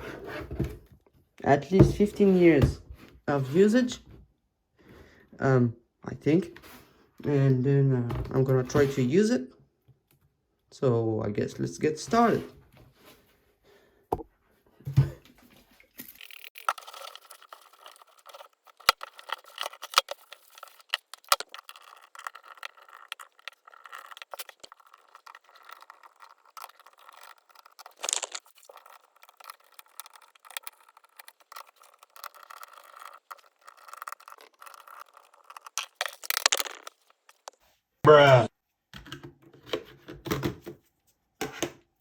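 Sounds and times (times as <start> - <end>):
plastic laptop parts clicking: 16.2 - 37.6.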